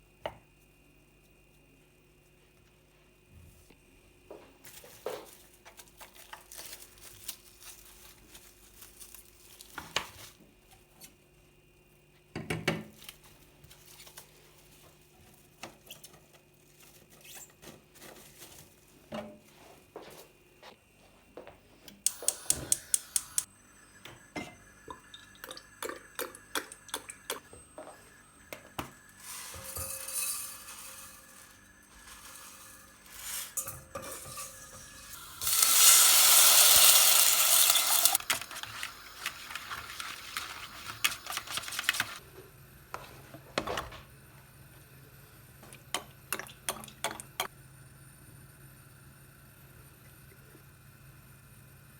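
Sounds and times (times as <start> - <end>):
dishes and utensils clinking: 29.2 - 35.2.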